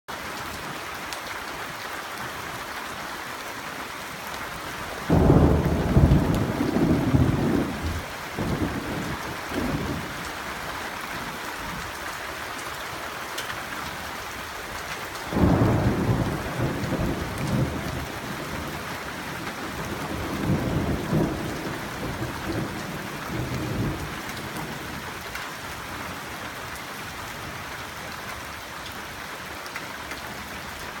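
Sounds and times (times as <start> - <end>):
steady rain falling: 0.1 - 31.0
thunder rumbling: 5.0 - 10.2, 15.3 - 24.9.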